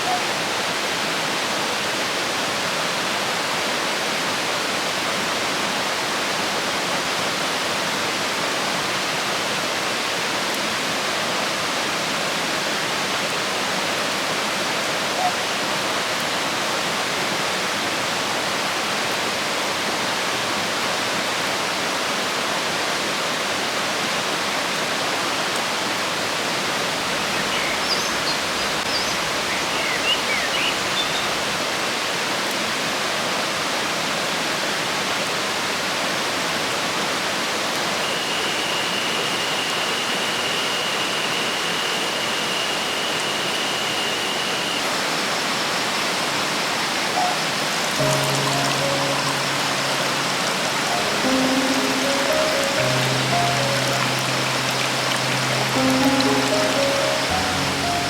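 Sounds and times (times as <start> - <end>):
river water rushing: 45.2 - 58.0.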